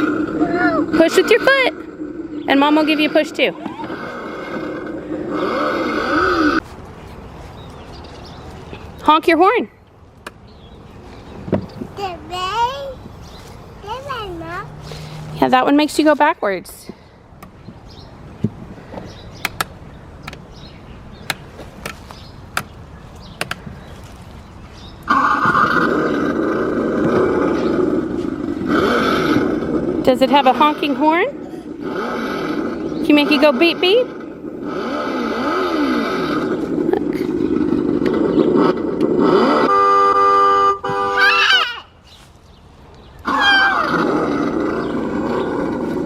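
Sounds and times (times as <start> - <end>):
electronic engine revving sound: 0.0 - 6.6, 25.1 - 30.9, 31.7 - 41.3, 43.2 - 46.0.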